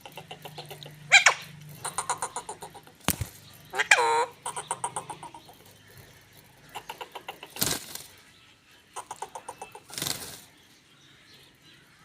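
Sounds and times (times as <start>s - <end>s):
parrot squawk: 0.0s - 3.0s, 3.7s - 5.5s
parrot clicking chatter: 0.0s - 8.1s, 9.0s - 10.4s.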